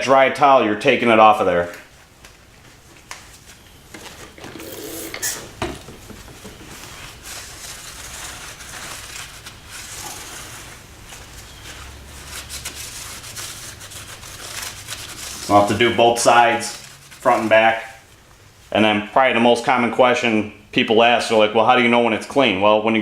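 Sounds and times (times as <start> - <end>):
light clicks and knocks: 5.4 - 7.0
towel rubbing a brake disc: 6.2 - 18.1.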